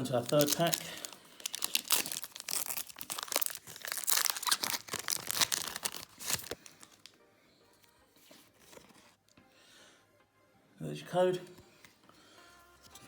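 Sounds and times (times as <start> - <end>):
foil wrapper tearing and crinkling: 0.0 - 7.2.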